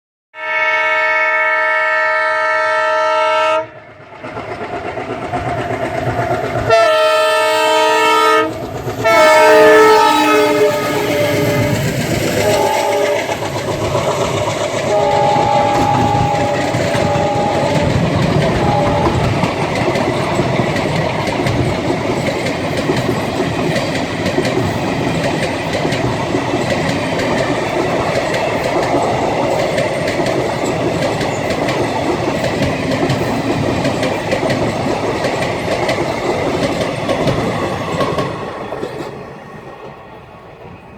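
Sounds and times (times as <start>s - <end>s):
train horn chord: 0.4s - 3.8s, 6.7s - 13.4s, 14.8s - 19.6s
train wheels clattering: 3.9s - 40.9s.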